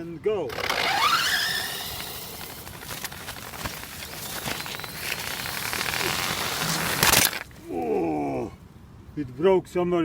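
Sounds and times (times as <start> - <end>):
toilet paper unrolling fast: 0.5 - 7.9.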